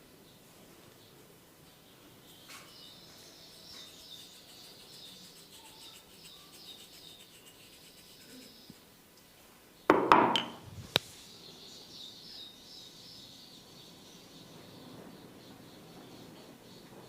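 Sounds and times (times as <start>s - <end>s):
faint insect chirping: 1.7s - 9.1s
sharp knocks and slaps of massage: 9.9s - 11.0s.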